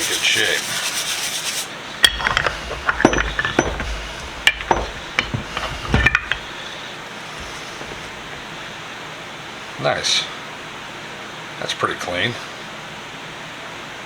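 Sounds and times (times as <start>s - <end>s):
faint hiss: 0.0s - 1.9s
metal parts clinking: 2.0s - 6.6s, 7.4s - 8.5s.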